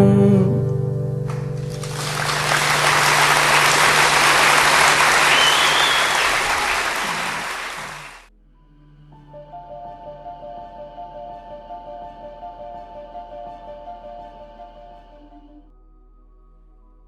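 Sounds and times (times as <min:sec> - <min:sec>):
audience applauding: 0:01.3 - 0:08.3.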